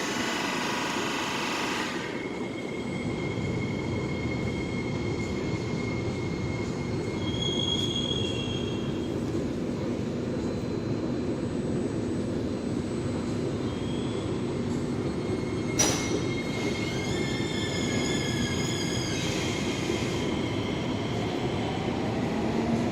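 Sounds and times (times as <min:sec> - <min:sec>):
train running low rumble: 0:01.8 - 0:22.9.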